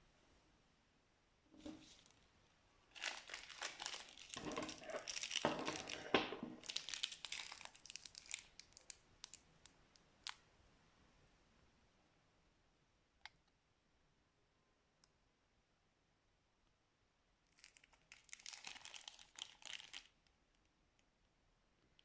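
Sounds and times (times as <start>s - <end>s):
plastic bag crinkling: 2.9s - 9.4s, 17.5s - 20.2s.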